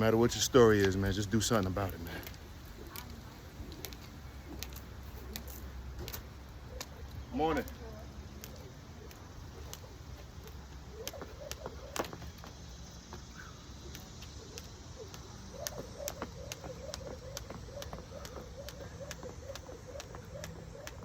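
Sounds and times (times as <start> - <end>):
jump rope slapping floor: 8.4 - 12.6, 13.9 - 21.0.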